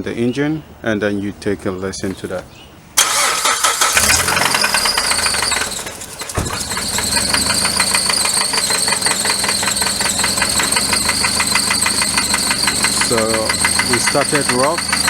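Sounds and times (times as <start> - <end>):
car engine rough idle: 3.0 - 15.0
rapid engine knocking: 3.9 - 15.0.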